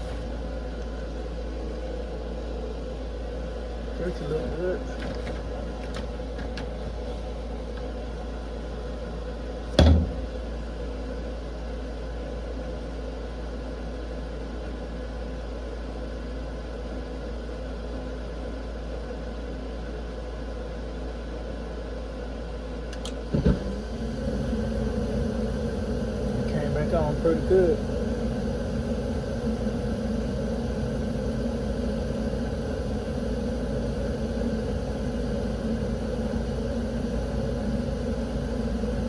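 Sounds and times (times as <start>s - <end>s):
furnace humming: 0.0s - 11.0s, 22.8s - 39.0s
loud thump: 9.8s - 10.3s, 23.3s - 23.7s.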